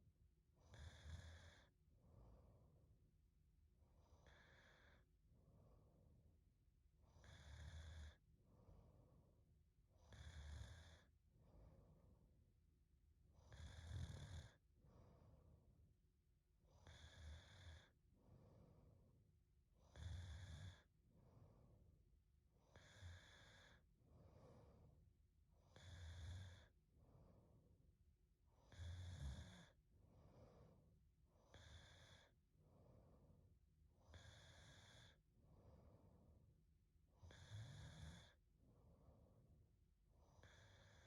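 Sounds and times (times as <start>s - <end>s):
woman snoring softly: 0.6s - 2.8s, 4.0s - 5.1s, 7.0s - 8.3s, 10.0s - 11.2s, 13.3s - 15.2s, 16.6s - 19.1s, 19.8s - 21.8s, 22.6s - 25.0s, 25.6s - 27.6s, 28.5s - 33.3s, 34.0s - 36.3s, 37.2s - 39.6s, 40.2s - 41.0s.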